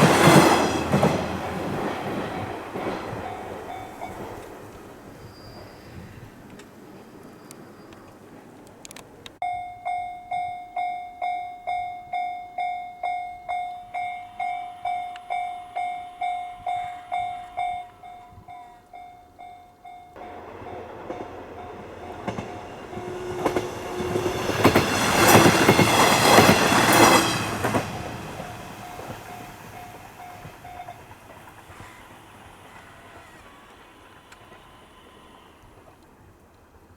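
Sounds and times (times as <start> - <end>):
diesel railcar passing: 0.0 - 36.9
level crossing warning bell: 2.2 - 4.8, 9.4 - 35.8.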